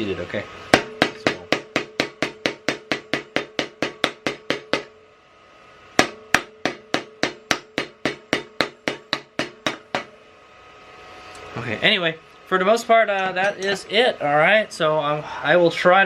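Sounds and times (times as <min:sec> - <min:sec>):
tire iron knocking on rim: 0:00.7 - 0:05.0, 0:06.0 - 0:10.2.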